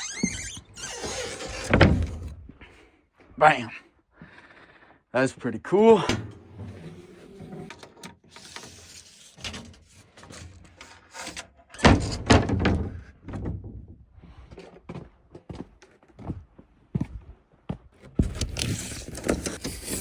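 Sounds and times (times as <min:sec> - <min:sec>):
heavy thump: 0:06.0 - 0:06.8.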